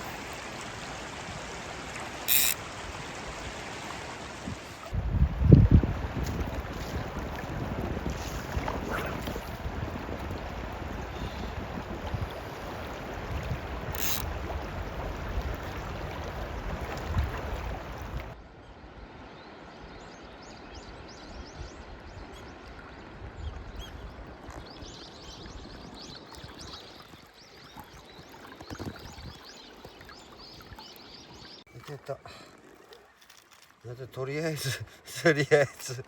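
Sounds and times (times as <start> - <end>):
river flowing: 0.0 - 5.0, 5.8 - 18.4
wind buffeting microphone: 4.2 - 18.4.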